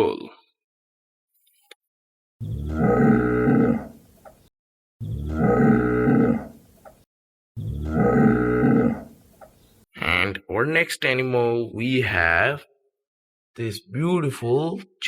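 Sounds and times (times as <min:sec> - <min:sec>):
cow mooing: 0:02.4 - 0:04.0, 0:05.0 - 0:06.6, 0:07.6 - 0:09.2.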